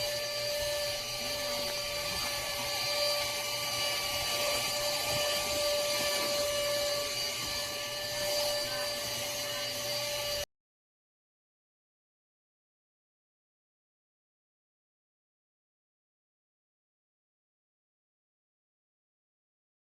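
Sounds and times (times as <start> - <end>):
vacuum cleaner whining: 0.0 - 10.5.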